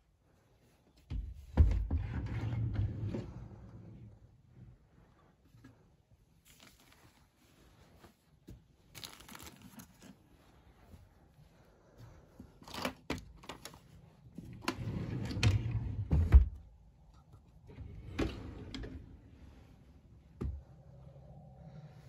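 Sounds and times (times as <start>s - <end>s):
low rumbling: 17.6s - 22.0s.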